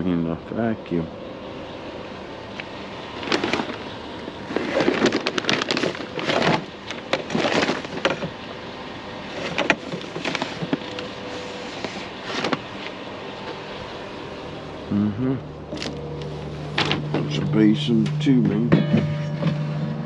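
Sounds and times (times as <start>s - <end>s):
steady background hum: 0.0s - 20.0s
plastic parts clattering: 3.2s - 3.9s, 4.5s - 8.4s, 9.4s - 11.1s.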